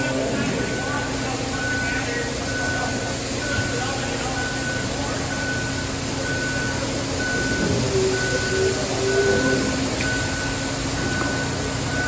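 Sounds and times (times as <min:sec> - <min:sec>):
diesel engine running: 0:00.0 - 0:12.0
reversing alarm beeping: 0:00.0 - 0:12.0.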